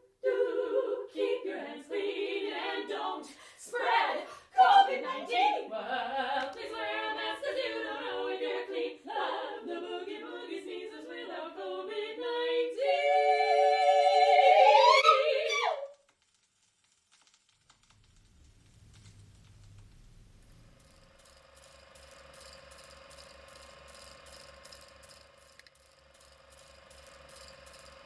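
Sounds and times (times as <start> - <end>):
women singing a cappella: 0.0 - 15.9.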